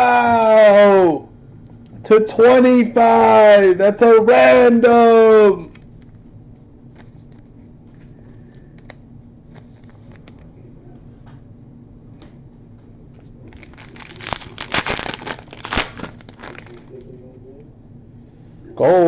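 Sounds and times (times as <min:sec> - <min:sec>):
low steady hum: 0:00.0 - 0:19.0
foil wrapper crinkling and tearing: 0:13.4 - 0:17.1.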